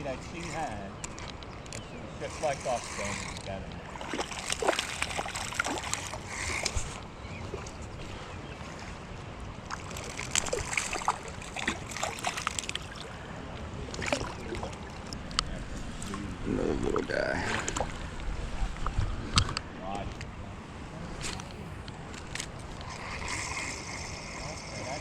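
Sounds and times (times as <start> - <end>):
creek water running: 0.0 - 19.1, 20.6 - 25.0
short splashes: 2.2 - 9.0, 9.7 - 13.2, 13.9 - 15.1.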